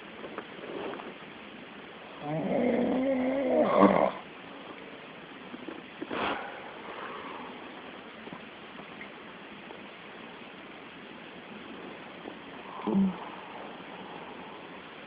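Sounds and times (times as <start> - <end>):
man snoring: 2.2 - 4.2.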